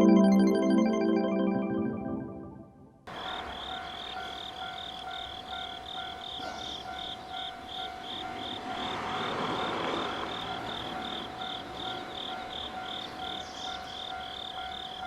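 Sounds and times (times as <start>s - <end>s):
level-crossing alarm bell: 3.1s - 15.0s.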